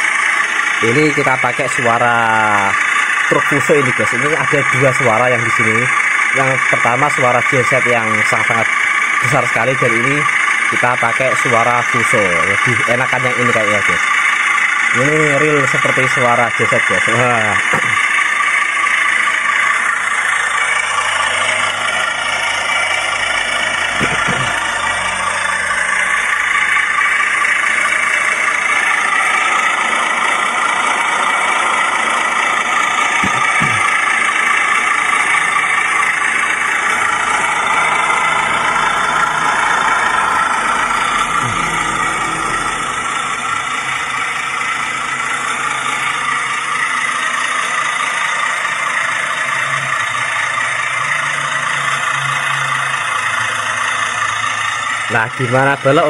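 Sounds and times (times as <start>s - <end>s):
diesel engine idling on small speaker: 0.0s - 56.0s.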